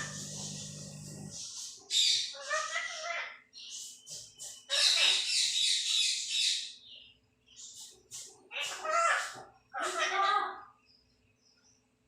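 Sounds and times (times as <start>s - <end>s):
parrot screeching: 8.5s - 10.7s
parrot squawking: 8.5s - 10.7s.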